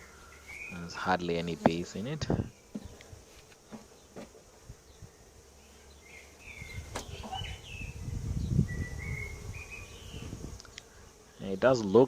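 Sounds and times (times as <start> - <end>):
bird chirps: 0.0 - 1.0, 4.9 - 10.3
bees humming faintly: 0.0 - 12.0.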